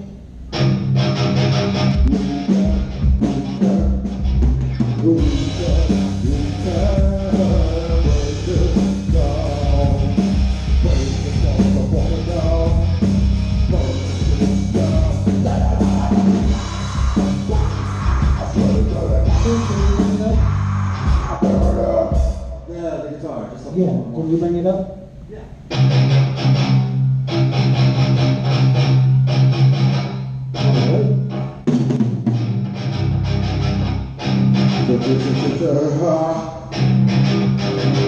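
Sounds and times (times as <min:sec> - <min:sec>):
bass guitar: 0:00.0 - 0:22.9, 0:25.0 - 0:38.0
guitar: 0:00.0 - 0:38.0
drums: 0:00.6 - 0:22.7, 0:25.7 - 0:35.6, 0:36.8 - 0:38.0
person singing: 0:02.0 - 0:04.3, 0:04.9 - 0:22.5, 0:34.8 - 0:36.8.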